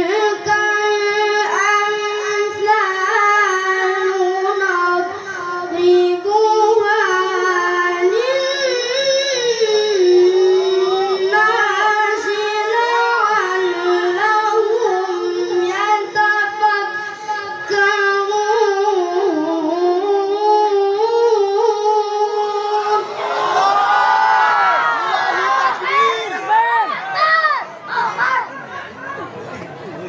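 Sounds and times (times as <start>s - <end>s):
high voice melodic recitation: 0.0s - 23.2s.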